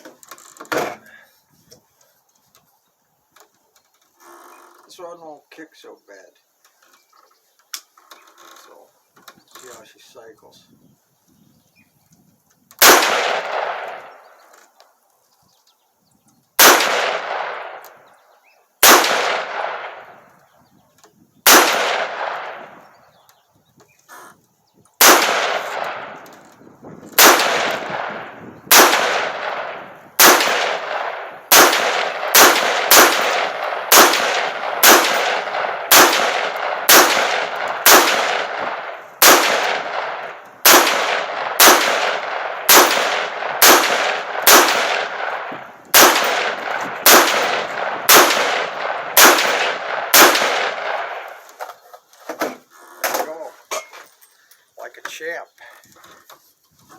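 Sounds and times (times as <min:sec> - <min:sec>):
rifle firing semi-automatic shots: 0:12.8 - 0:14.4, 0:16.6 - 0:18.0, 0:18.8 - 0:20.4, 0:21.4 - 0:23.0, 0:25.0 - 0:51.6.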